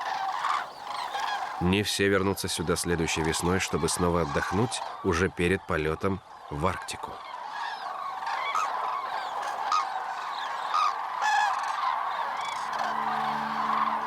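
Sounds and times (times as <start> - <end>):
flock of cranes calling: 0.0 - 14.0
soft music: 12.2 - 14.0.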